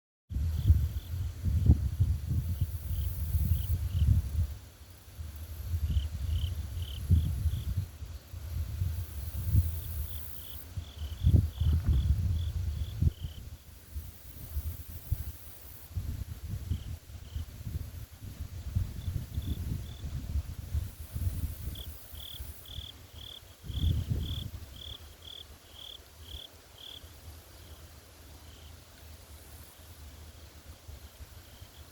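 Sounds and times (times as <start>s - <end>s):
wind rumbling on microphone: 0.3s - 25.4s
insects chirping: 0.5s - 16.1s, 16.7s - 31.9s.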